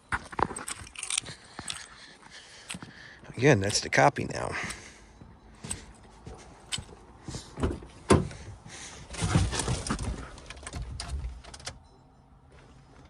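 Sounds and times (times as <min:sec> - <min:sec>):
keys clicking: 0:00.2 - 0:04.9, 0:05.6 - 0:07.1
rustling: 0:08.9 - 0:11.0.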